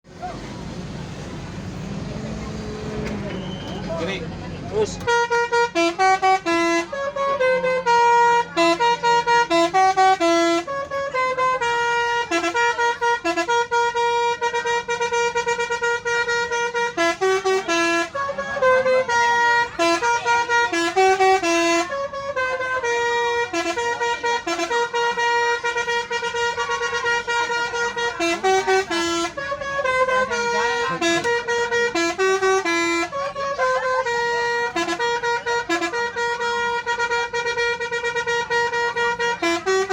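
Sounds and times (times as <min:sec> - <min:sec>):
musical bus horn playing tune: 0:00.2 - 0:39.9.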